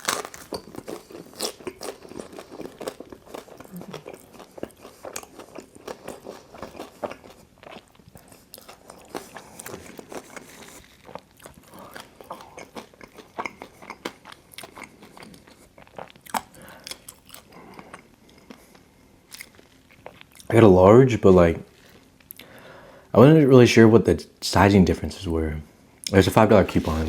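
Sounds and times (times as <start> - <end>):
crunchy pizza chewing: 0.0 - 20.5, 26.4 - 27.0.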